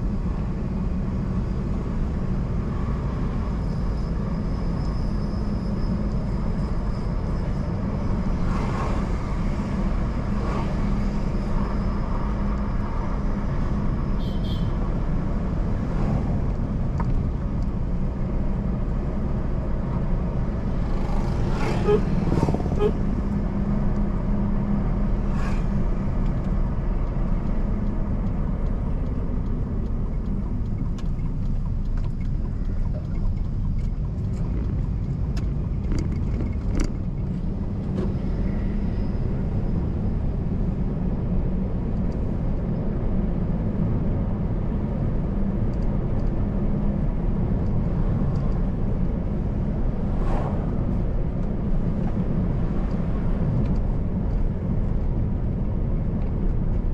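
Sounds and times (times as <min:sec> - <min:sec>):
car engine and tyres rumbling: 0:00.0 - 0:56.9.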